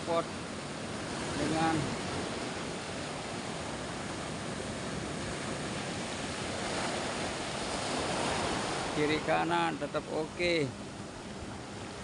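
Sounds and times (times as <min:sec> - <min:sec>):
sea waves and surf: 0:00.0 - 0:12.0.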